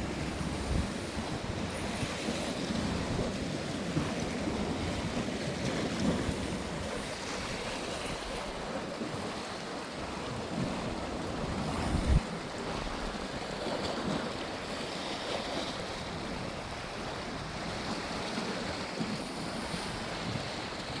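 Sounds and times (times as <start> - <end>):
wind buffeting microphone: 0.0 - 14.2
wind and waves: 0.0 - 21.0.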